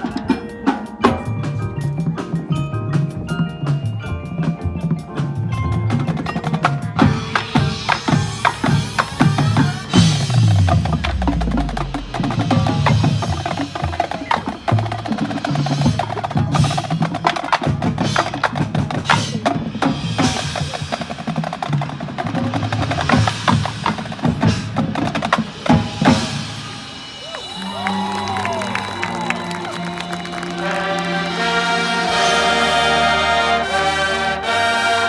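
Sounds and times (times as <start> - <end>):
drums and wood-block clicks: 0.0 - 26.4, 27.2 - 32.2
marching band music: 0.0 - 35.0.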